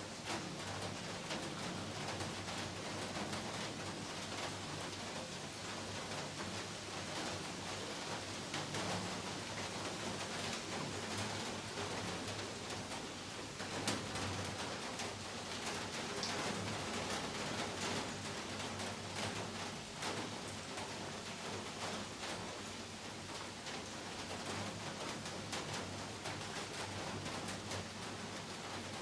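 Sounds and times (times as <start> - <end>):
heavy rain falling: 0.1 - 29.0.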